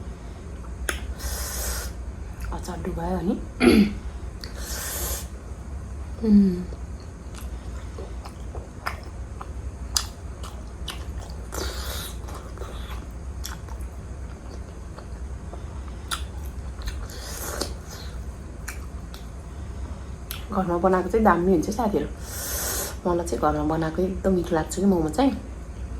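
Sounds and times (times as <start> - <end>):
person humming: 6.2 - 6.8
wet chewing with smacks: 6.7 - 19.4, 20.3 - 20.5.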